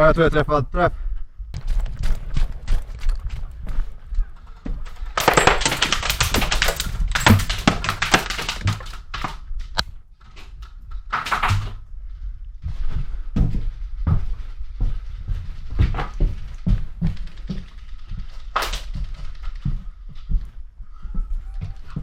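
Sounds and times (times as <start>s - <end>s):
knocks and low thuds: 1.5s - 9.8s, 12.6s - 18.2s
airsoft rifle firing clacks: 1.6s - 9.4s.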